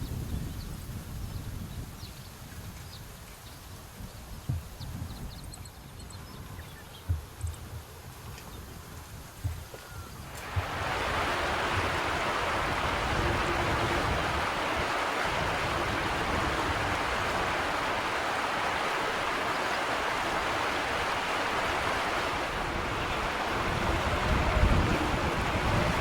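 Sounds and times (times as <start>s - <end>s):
flowing water rushing: 5.6s - 26.0s.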